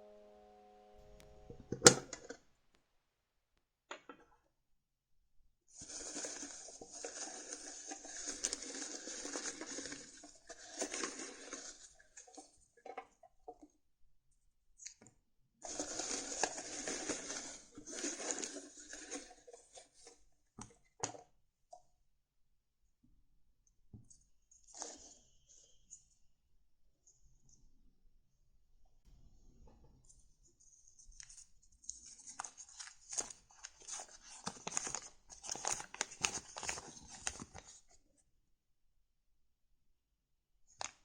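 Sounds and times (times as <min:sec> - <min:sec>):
cards and paper rustling: 0:31.0 - 0:38.0.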